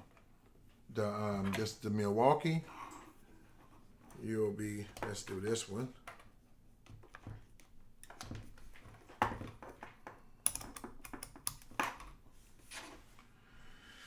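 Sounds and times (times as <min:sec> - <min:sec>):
plastic clicks and knocks: 0:06.1 - 0:12.2.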